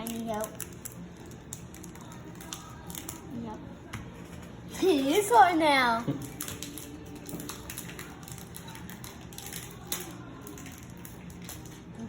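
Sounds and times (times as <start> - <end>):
foil wrapper crinkling: 0.0 - 3.3, 6.2 - 12.0.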